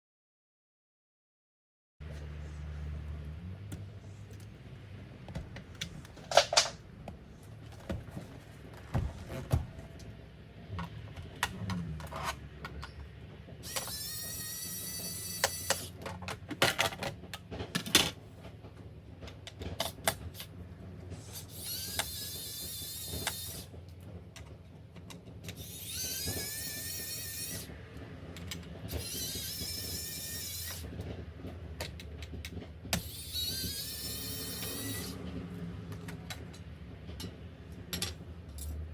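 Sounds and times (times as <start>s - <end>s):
electric screwdriver whining: 13.6s - 16.0s, 21.3s - 23.7s, 25.5s - 27.7s, 28.9s - 30.9s, 33.0s - 35.2s.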